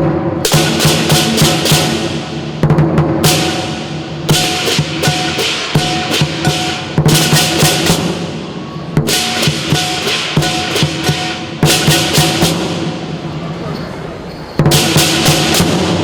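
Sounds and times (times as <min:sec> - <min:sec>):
large drum beating: 0:00.0 - 0:13.5, 0:14.6 - 0:16.0
cymbals crashing: 0:00.0 - 0:16.0
gong: 0:03.2 - 0:08.3, 0:09.1 - 0:13.1.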